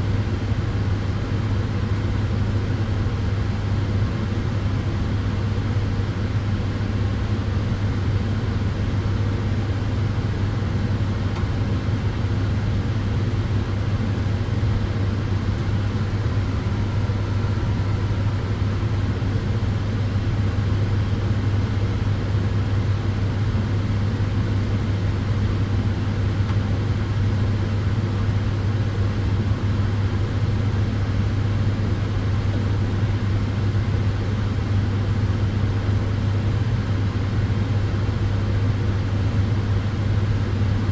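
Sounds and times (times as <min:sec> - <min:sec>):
tanning bed humming: 0:14.5 - 0:19.6.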